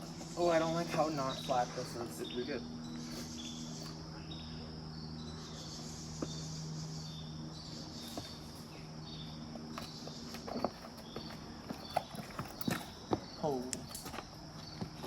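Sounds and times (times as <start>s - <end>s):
insects chirping: 0.0s - 15.0s
low steady hum: 0.0s - 15.0s
footsteps on rock: 9.7s - 15.0s.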